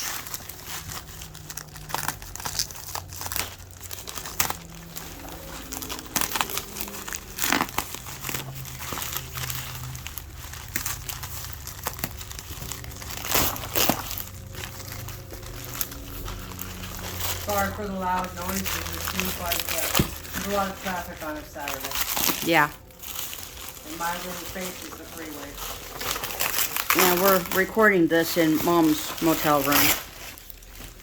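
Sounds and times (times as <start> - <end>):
bubble wrap crinkling: 0.0 - 31.0
low hum of traffic: 0.0 - 31.0.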